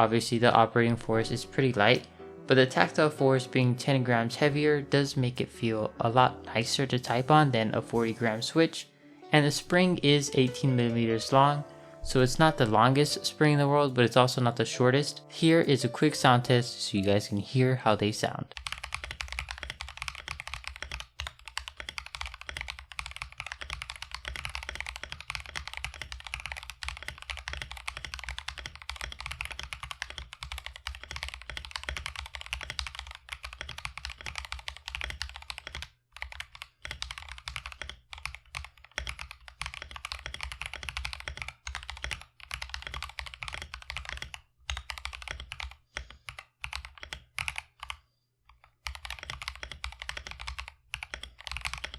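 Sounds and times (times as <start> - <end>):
mechanical keyboard key clacks: 48.9 - 51.9.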